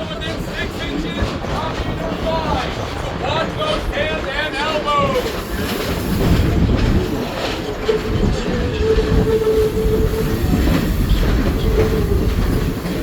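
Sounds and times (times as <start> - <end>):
rail clacks: 0.0 - 13.0
train wheels rumbling: 0.0 - 13.0
wheel squeal: 5.2 - 13.0.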